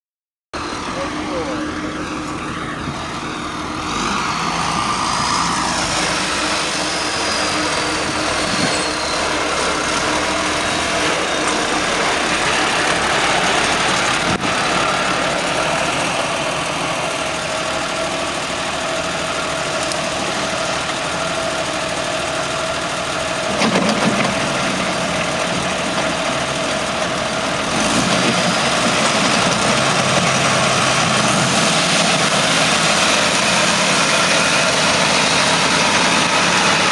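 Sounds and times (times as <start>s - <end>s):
tractor engine running under load: 0.6s - 36.9s.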